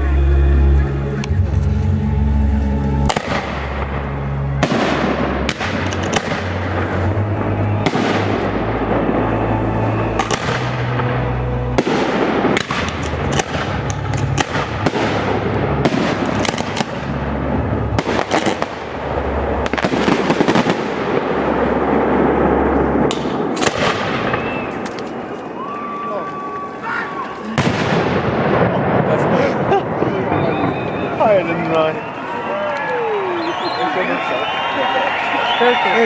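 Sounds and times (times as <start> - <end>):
fireworks crackling: 2.5 - 36.0
fireworks shells bursting: 3.1 - 25.6.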